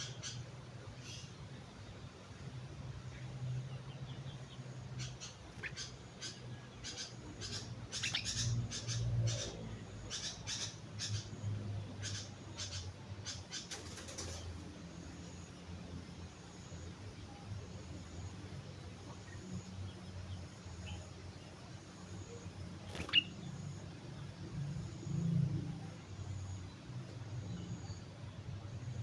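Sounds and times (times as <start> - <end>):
low steady hum: 0.0 - 29.0
bird chirping: 3.0 - 25.2.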